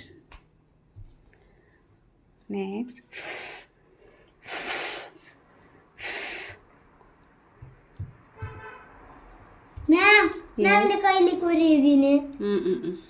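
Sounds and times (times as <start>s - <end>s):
child's hissing exhalations: 3.1s - 3.8s, 4.4s - 5.4s, 6.0s - 6.6s.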